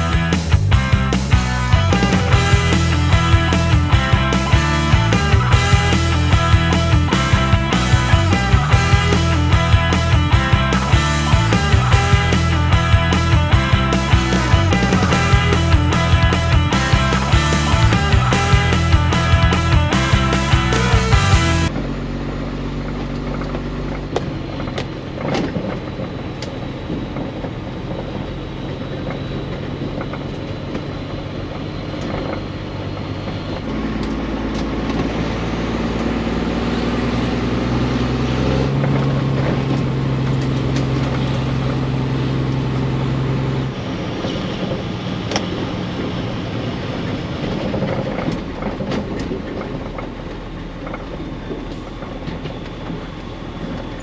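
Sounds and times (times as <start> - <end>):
background music with low notes: 0.0 - 21.7
truck running on road: 0.0 - 54.0.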